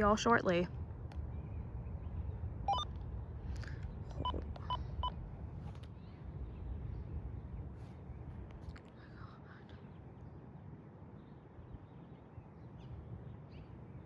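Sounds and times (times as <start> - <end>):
radio scanner beeps: 2.7 - 2.9, 4.2 - 5.2.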